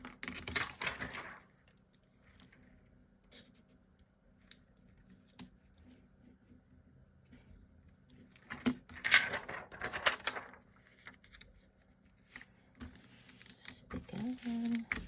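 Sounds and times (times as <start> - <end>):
paper rustling scrape: 0.3 - 1.5, 8.5 - 11.4.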